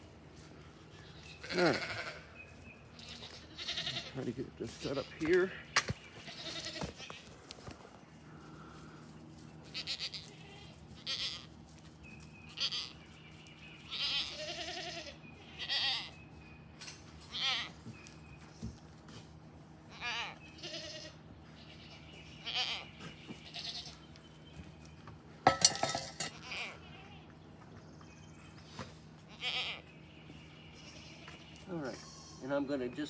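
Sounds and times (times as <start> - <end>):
goats bleating: 0.8 - 2.4, 3.0 - 7.7, 9.7 - 11.6, 12.6 - 13.1, 13.8 - 16.2, 17.3 - 17.8, 19.9 - 24.1, 25.5 - 27.4, 29.2 - 29.9, 30.8 - 32.7.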